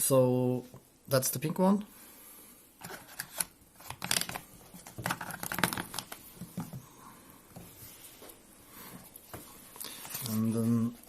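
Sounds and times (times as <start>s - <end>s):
packaging rustling: 2.8s - 6.7s.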